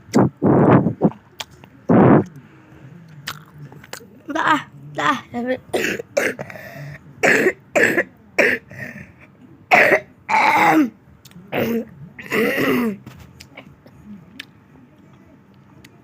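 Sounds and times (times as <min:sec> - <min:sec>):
person coughing: 0:05.7 - 0:09.0, 0:09.7 - 0:10.9, 0:11.5 - 0:13.0.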